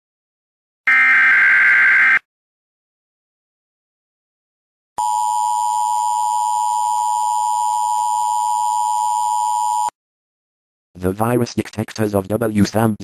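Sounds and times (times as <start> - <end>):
two-tone alarm tone: 0.9 - 2.3, 5.0 - 9.9.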